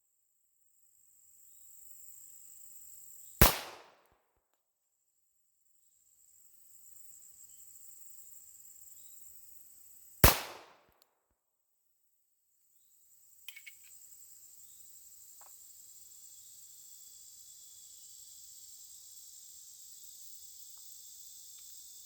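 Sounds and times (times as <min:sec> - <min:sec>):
pistol shots: 0:03.4 - 0:04.0, 0:10.2 - 0:10.9.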